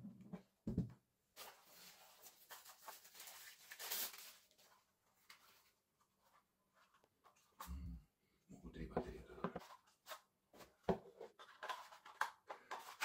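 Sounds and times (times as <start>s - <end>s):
packaging crinkling and rustling: 1.4s - 5.8s.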